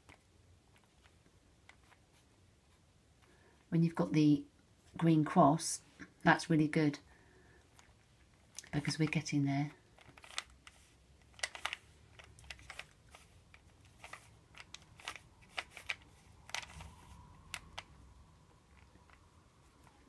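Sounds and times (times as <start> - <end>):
plastic puzzle cube clicking: 9.9 - 20.0.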